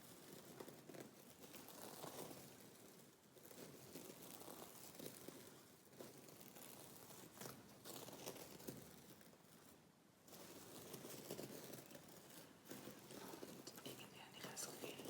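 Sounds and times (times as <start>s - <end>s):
close-miked scratching and crinkling: 0.0s - 15.0s.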